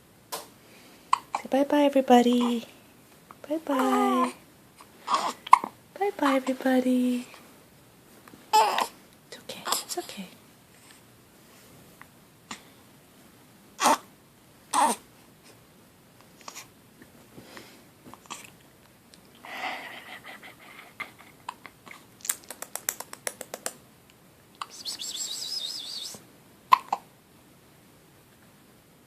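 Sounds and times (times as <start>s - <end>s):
baby hiccuping: 5.1s - 5.8s, 13.8s - 14.1s, 14.7s - 15.0s, 26.7s - 27.1s.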